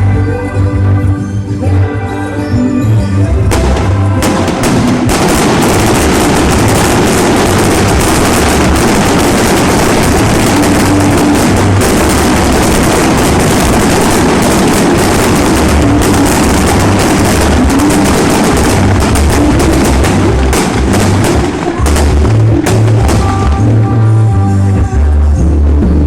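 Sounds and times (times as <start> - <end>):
fireworks crackling and popping: 3.5 - 24.3.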